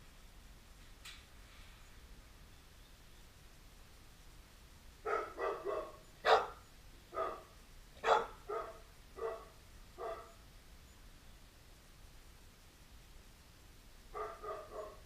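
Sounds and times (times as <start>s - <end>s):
dog barking: 5.0s - 10.4s, 14.1s - 15.0s.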